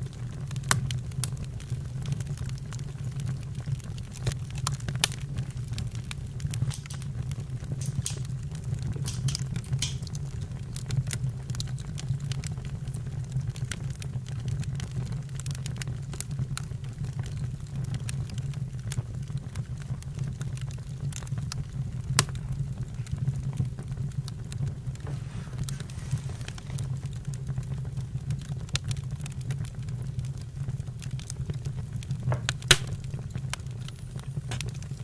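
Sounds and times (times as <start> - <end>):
burning wood crackling and popping: 0.0 - 35.0
steady low rumble: 4.9 - 10.1, 32.3 - 35.0.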